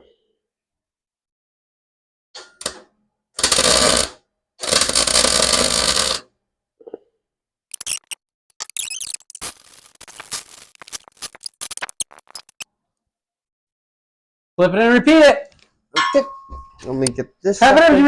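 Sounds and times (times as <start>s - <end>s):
metal parts clicking and knocking: 7.7s - 9.4s
electric welding: 7.7s - 12.6s.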